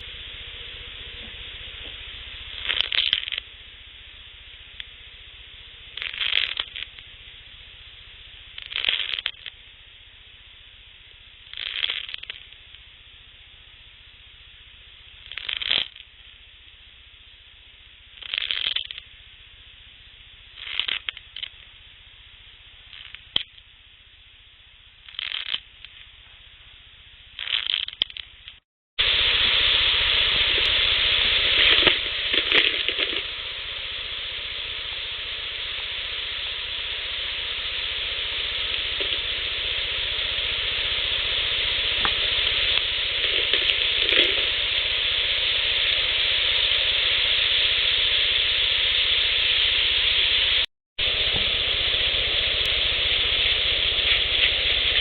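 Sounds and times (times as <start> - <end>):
loud steady hiss: 0.0 - 55.0
scratching sounds: 1.1 - 3.5, 5.9 - 7.2, 8.5 - 9.6, 11.4 - 12.8, 15.2 - 16.2, 18.2 - 19.1, 20.6 - 21.7, 25.0 - 26.4, 27.4 - 55.0.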